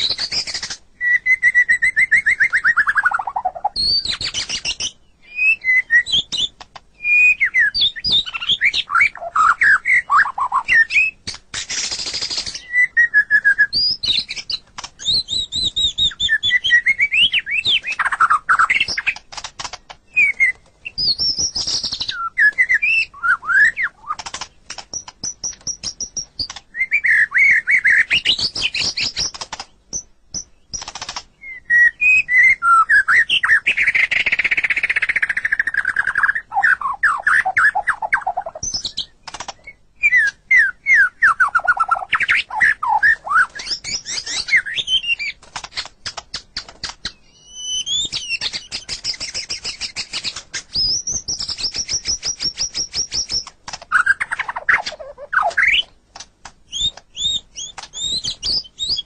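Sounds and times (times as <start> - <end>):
bird clicking chatter: 0.0 - 0.8, 2.4 - 5.0, 11.0 - 12.6, 17.5 - 23.0, 23.7 - 26.7, 27.4 - 31.4, 33.7 - 40.4, 41.6 - 59.0
bird singing varied song: 0.0 - 56.0, 56.6 - 59.0.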